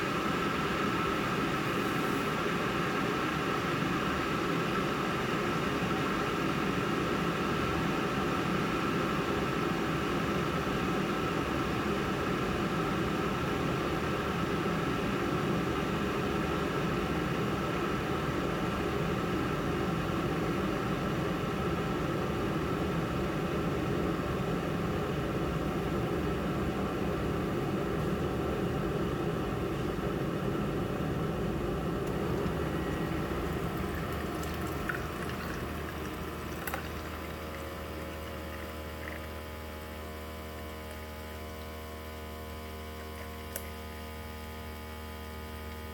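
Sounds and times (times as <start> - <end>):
electrical hum: 0.0 - 45.9
coffee maker pump brewing: 31.5 - 44.0.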